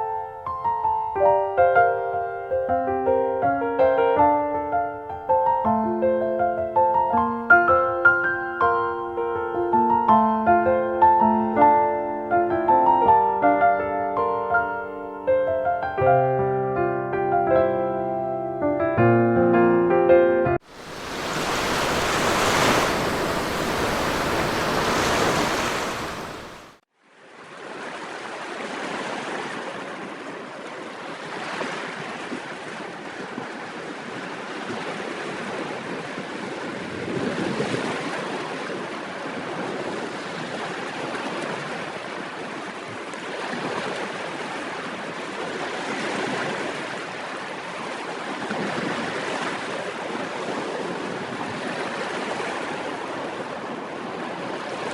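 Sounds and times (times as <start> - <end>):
sea waves washing onto beach: 20.6 - 26.8, 27.6 - 54.9.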